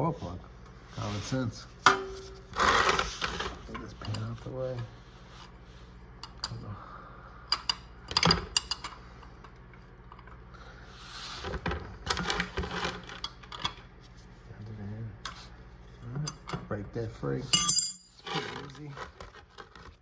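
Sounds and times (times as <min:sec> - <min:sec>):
metal tools clinking and clattering: 0:17.5 - 0:18.8.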